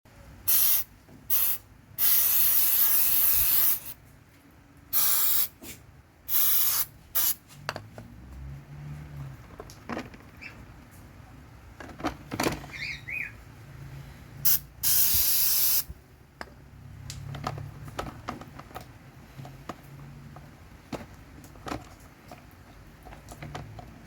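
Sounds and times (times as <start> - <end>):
aerosol spray hissing: 0.5 - 4.0, 4.9 - 5.6, 6.3 - 7.4, 14.5 - 15.9.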